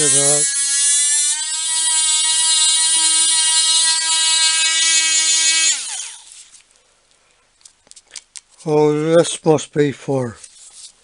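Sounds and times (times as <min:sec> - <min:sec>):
rotary tool whining: 0:00.0 - 0:06.6.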